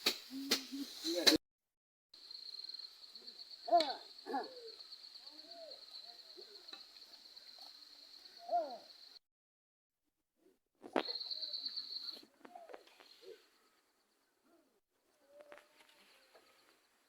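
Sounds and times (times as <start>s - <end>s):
insects trilling: 0.0s - 1.4s, 2.2s - 9.2s, 10.9s - 13.7s.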